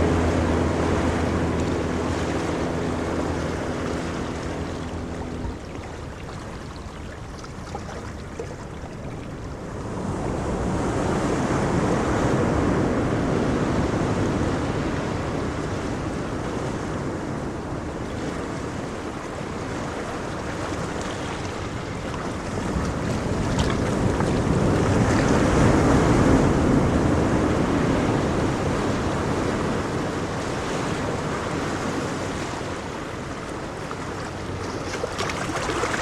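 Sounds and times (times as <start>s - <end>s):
ocean waves washing in: 0.0s - 36.0s
wind noise on microphone: 9.0s - 33.4s.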